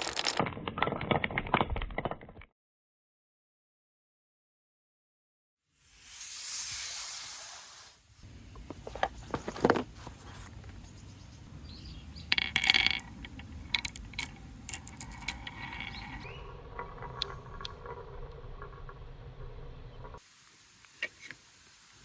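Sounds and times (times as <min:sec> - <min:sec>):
marbles rolling on wooden run: 0:00.0 - 0:02.5, 0:12.2 - 0:20.2
hiss: 0:05.8 - 0:08.2, 0:20.2 - 0:22.0.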